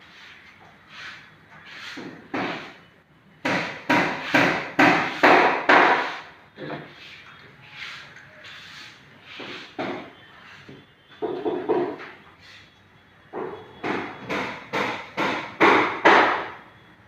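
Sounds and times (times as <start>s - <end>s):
hammer striking wood: 3.4s - 6.2s, 13.4s - 16.6s.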